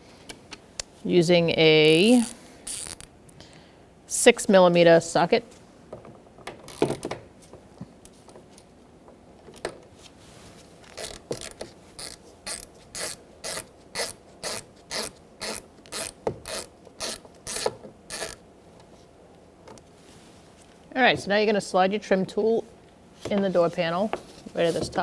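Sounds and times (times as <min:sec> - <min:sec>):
hand ratchet clicking: 0:01.9 - 0:03.1, 0:10.9 - 0:18.4.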